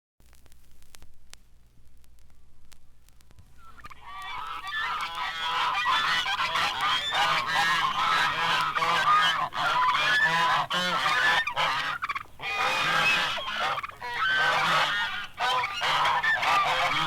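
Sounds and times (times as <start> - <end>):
record surface clicks: 0.2 - 5.2
flock of birds calling: 3.6 - 17.0.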